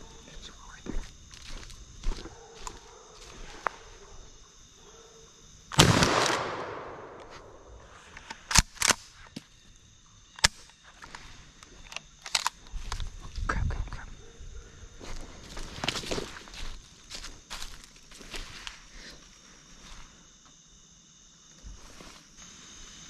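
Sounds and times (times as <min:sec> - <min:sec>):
shotgun shot: 0:05.8 - 0:07.4.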